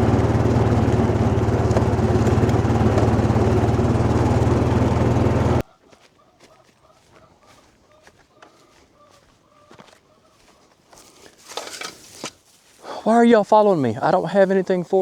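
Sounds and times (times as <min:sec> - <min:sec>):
engine running steadily: 0:00.0 - 0:05.6.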